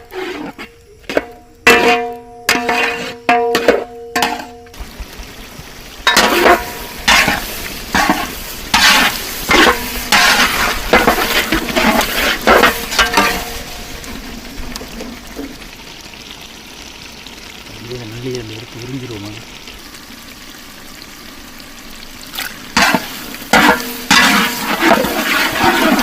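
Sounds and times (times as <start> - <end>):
utensil scraping in a pan: 0.0 - 4.6, 6.1 - 15.5, 22.7 - 26.0
food sizzling: 0.0 - 26.0.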